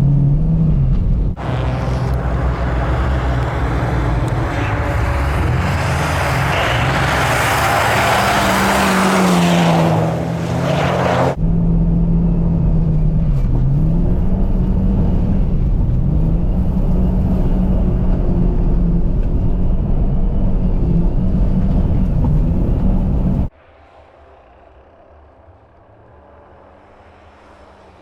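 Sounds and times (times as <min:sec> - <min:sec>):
car engine revving: 0:01.3 - 0:11.4.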